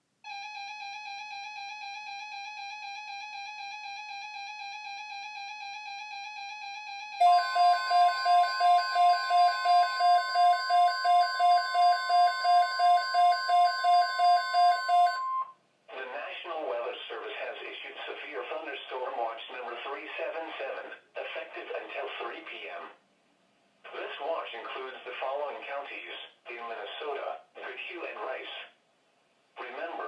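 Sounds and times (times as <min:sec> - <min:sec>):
rapid alarm beeping: 0:06.7 - 0:15.5
steady high electronic tone: 0:07.2 - 0:15.4
warbling electronic alert tone: 0:07.2 - 0:15.5.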